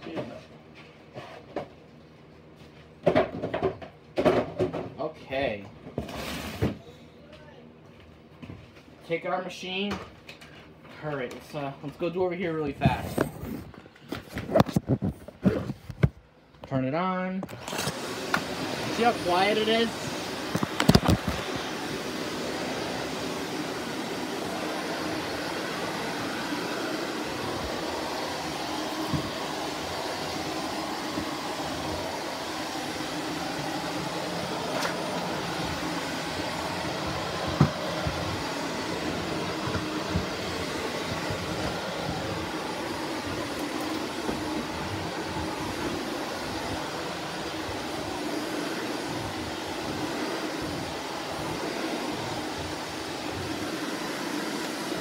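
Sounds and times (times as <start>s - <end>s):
vacuum cleaner running: 17.4s - 55.0s.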